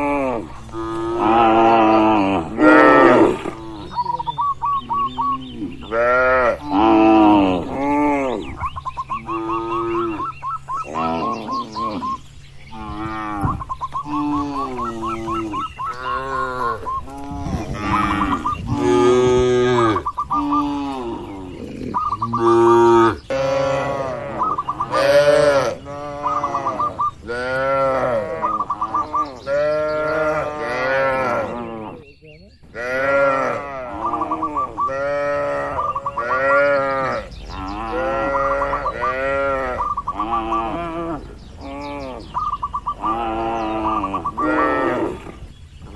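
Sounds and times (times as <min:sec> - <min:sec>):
cattle mooing: 0:00.0 - 0:04.2, 0:04.9 - 0:08.5, 0:09.2 - 0:10.3, 0:10.9 - 0:32.0, 0:32.8 - 0:45.5
small bird chirping: 0:08.2 - 0:27.8, 0:34.0 - 0:45.9.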